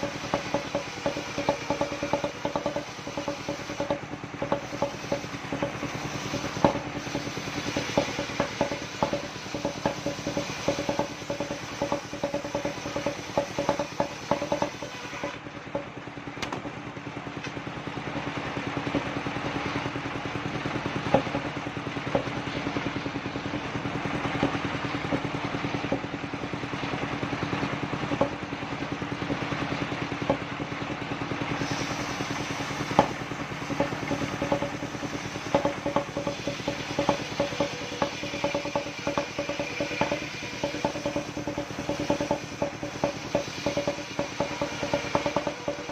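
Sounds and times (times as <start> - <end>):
wood knocking on metal rig: 0.0 - 16.7, 20.9 - 22.6, 27.6 - 28.5, 32.8 - 45.9
sawmill engine running: 0.0 - 45.9.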